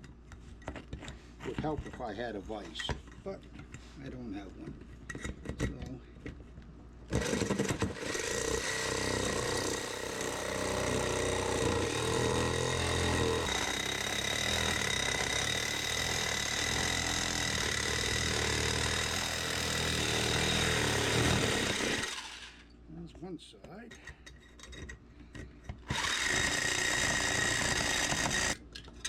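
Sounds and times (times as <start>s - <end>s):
jigsaw cutting sheet metal: 7.1s - 22.6s, 25.9s - 28.6s.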